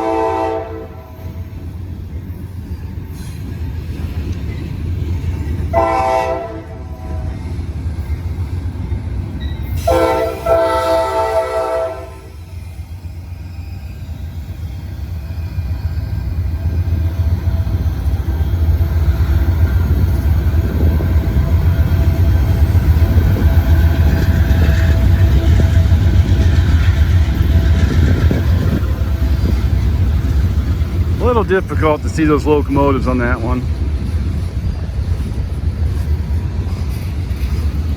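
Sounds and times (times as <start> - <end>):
locomotive air horn blast: 0.0 - 1.2, 5.7 - 7.4, 9.8 - 12.4
freight train rumbling by: 0.0 - 37.9.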